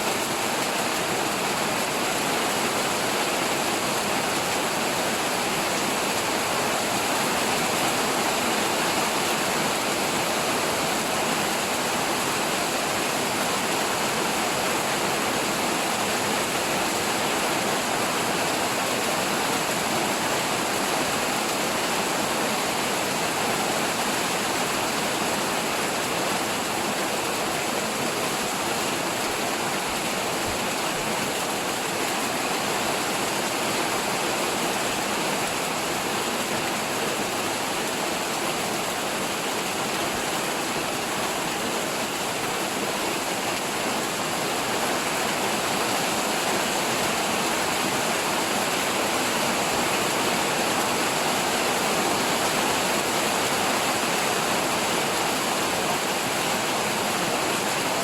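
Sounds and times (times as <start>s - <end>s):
heavy rain pouring: 0.0s - 58.0s.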